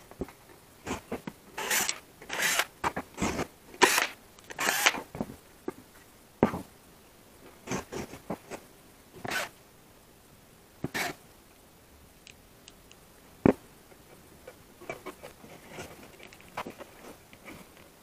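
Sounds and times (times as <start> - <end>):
rustling on a workbench: 14.8 - 18.0.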